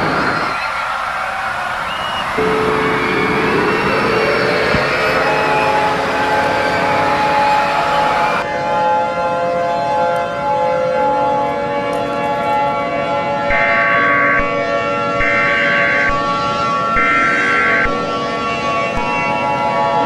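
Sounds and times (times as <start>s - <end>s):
higher siren tone: 0.0s - 11.4s
siren wailing: 0.0s - 20.0s.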